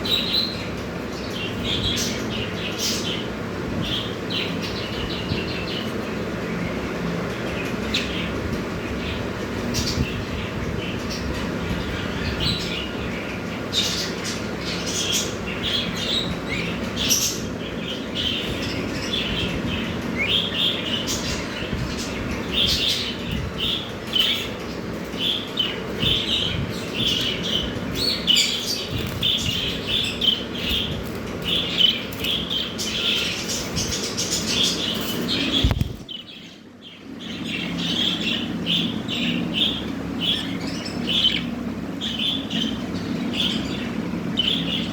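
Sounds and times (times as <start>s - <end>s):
budgerigars chattering: 9.0s - 44.9s
wings fluttering: 26.0s - 36.2s.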